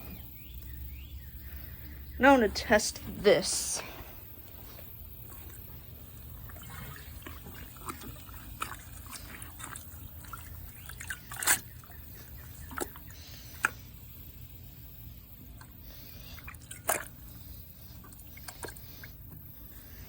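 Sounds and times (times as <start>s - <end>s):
water dripping: 4.4s - 19.4s
louder water plinks: 5.2s - 13.8s.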